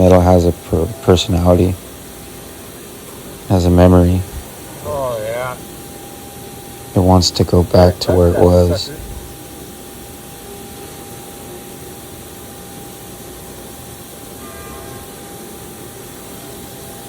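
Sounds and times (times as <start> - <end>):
faint high tones: 14.3 - 17.0.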